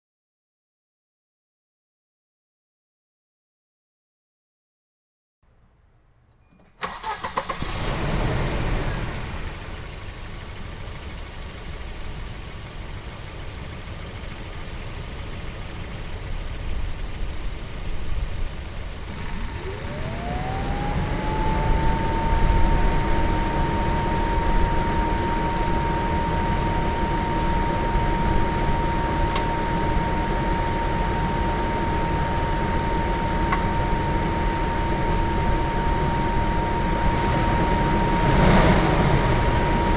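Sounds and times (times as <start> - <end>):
car engine starting and idling: 5.6 - 39.9
cooling fan whine: 16.4 - 39.9.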